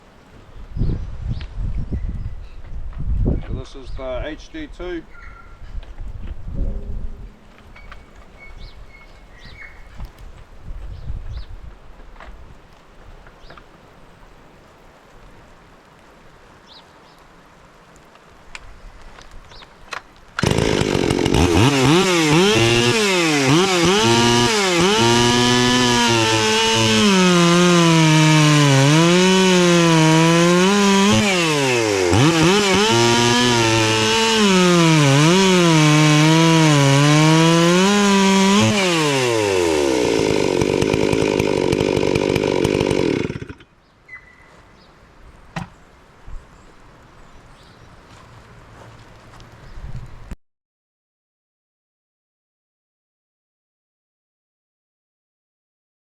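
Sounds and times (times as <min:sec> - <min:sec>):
chainsaw running at full throttle: 0:20.4 - 0:43.7.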